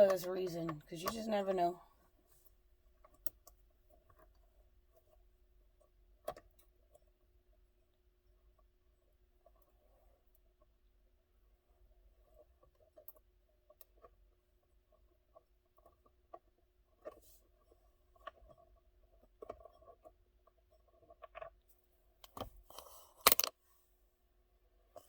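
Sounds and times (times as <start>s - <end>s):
faint steady hum: 0.0s - 2.6s.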